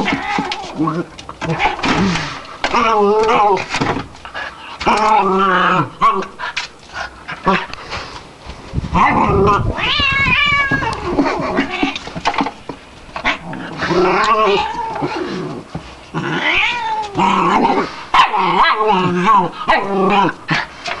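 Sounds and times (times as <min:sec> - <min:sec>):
cat yowling: 0:09.1 - 0:12.0, 0:13.9 - 0:15.2, 0:16.3 - 0:20.3.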